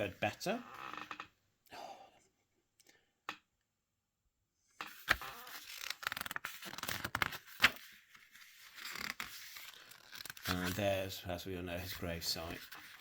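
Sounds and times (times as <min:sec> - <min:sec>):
paper pages rustling: 0:04.9 - 0:13.0.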